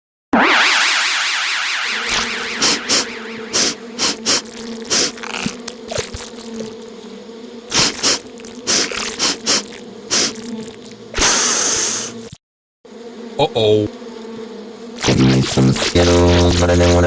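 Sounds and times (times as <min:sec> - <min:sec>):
bees buzzing: 0:01.9 - 0:12.3, 0:12.9 - 0:17.0
loud hissing burst: 0:02.1 - 0:05.2, 0:07.7 - 0:10.4, 0:11.2 - 0:12.2.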